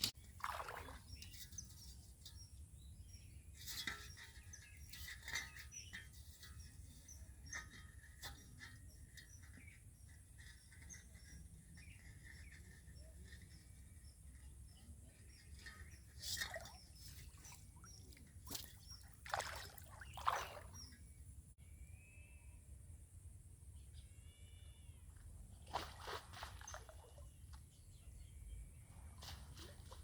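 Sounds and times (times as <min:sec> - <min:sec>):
faint bird chirps: 0:00.7 - 0:22.7, 0:23.6 - 0:25.5.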